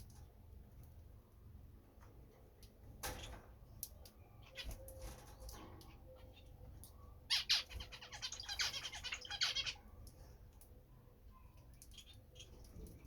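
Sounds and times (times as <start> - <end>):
bird chirping: 4.1 - 10.1, 11.3 - 13.0.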